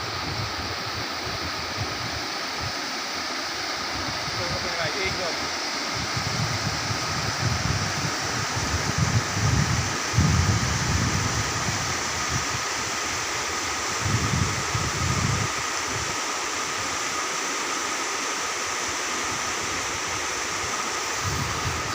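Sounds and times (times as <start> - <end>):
wind buffeting microphone: 0.0 - 2.8, 3.8 - 16.2, 20.6 - 21.9
river water rushing: 0.0 - 10.2, 15.5 - 21.9.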